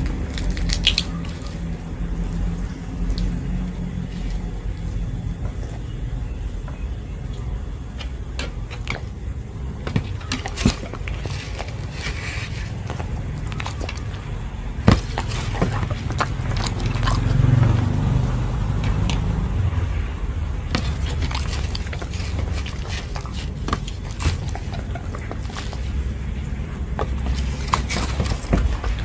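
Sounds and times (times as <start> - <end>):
dog chewing food: 9.9 - 19.5, 20.6 - 29.0
low rumble: 12.8 - 29.0.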